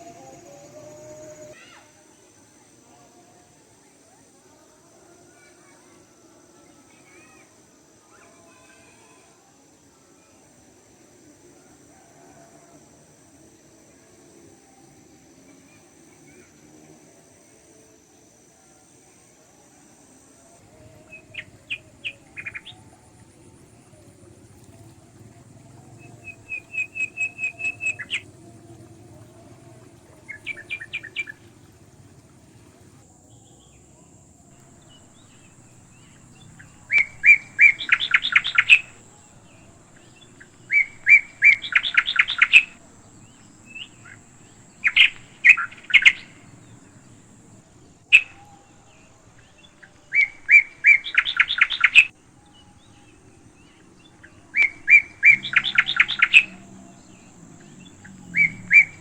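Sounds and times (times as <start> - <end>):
bird calling rapid notes: 20.9 - 31.9.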